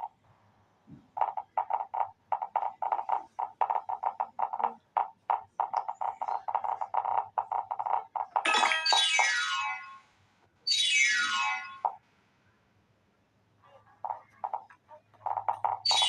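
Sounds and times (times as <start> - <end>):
rapid croak-like pulses: 1.2 - 8.4, 13.7 - 16.0.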